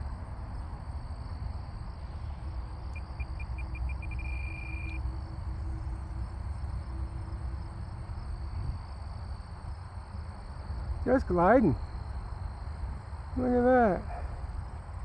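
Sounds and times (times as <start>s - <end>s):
steady high tone: 3.0s - 5.0s.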